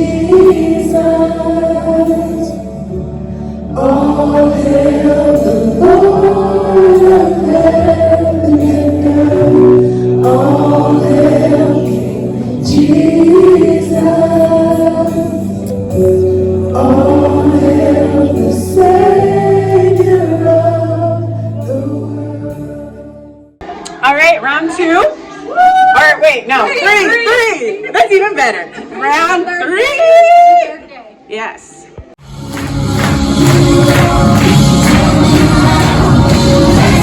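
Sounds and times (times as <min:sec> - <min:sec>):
held bass notes: 0:00.0 - 0:23.6, 0:32.2 - 0:37.0
choir singing gospel: 0:00.0 - 0:23.9, 0:32.2 - 0:37.0.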